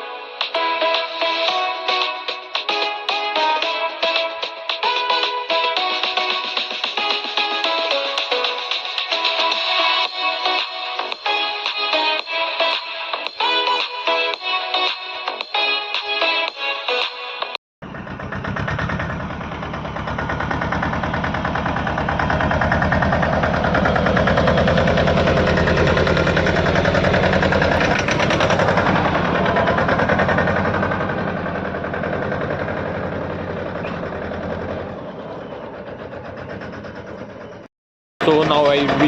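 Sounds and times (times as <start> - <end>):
tractor diesel engine running: 17.8 - 39.0.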